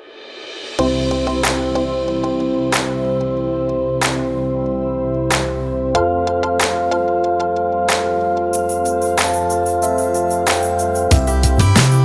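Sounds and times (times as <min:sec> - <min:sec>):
light percussion beat: 0:00.3 - 0:03.4, 0:04.0 - 0:04.6, 0:05.3 - 0:07.2, 0:07.9 - 0:12.0
organ-like keyboard chords: 0:00.8 - 0:12.0.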